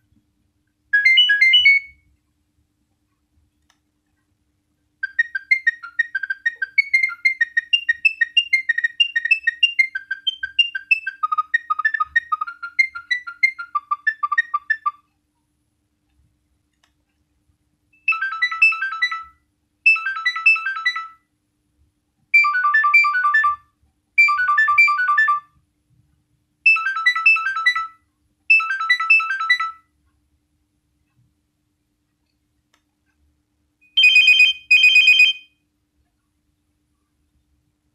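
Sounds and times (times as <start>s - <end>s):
rapid beeping ringtone: 1.0s - 1.9s, 18.1s - 21.2s, 22.4s - 23.6s, 24.2s - 25.5s, 26.7s - 29.8s, 33.9s - 35.5s
mobile phone ringtone melody: 1.0s - 2.0s, 18.1s - 21.2s, 22.4s - 23.6s, 24.2s - 25.5s, 26.7s - 29.8s, 34.0s - 35.5s.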